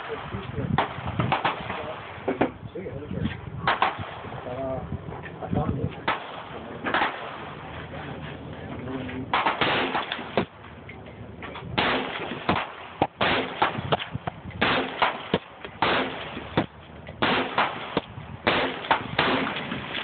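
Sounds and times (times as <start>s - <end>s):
gunshots with short echo: 0.0s - 2.5s, 3.6s - 4.4s, 6.0s - 7.7s, 9.3s - 10.6s, 11.7s - 20.0s.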